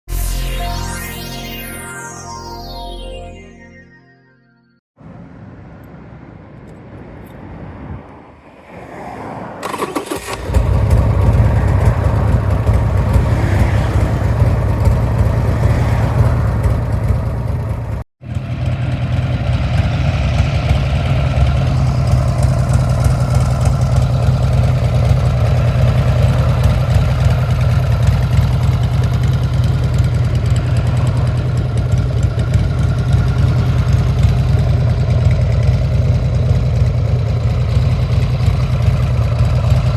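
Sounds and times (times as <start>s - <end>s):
motorcycle engine cranking: 9.6s - 11.5s
motorcycle engine idling: 10.2s - 39.9s.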